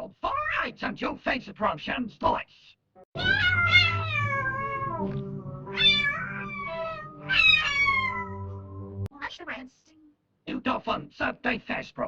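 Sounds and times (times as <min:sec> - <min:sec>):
cat meowing: 0:03.2 - 0:05.1, 0:05.7 - 0:08.4
soft background music: 0:03.2 - 0:09.1.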